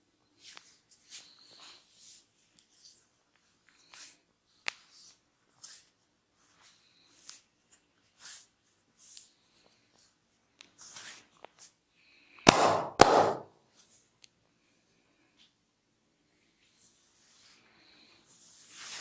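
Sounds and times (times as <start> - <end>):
sharp loud hand strikes: 12.5 - 13.5.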